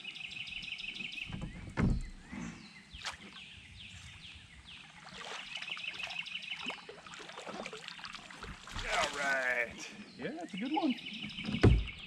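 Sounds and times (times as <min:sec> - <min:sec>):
dull thump: 0:01.3 - 0:02.2, 0:11.3 - 0:12.0.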